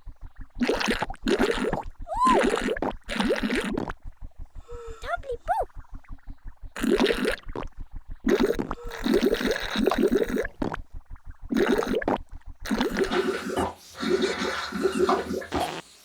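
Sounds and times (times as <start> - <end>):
cartoon drinking gurgles: 0.6 - 4.0, 6.8 - 10.8, 11.5 - 15.9.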